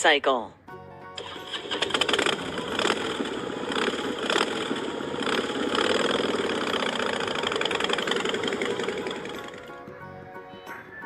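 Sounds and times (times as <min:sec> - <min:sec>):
motorcycle engine running: 0:01.2 - 0:09.9.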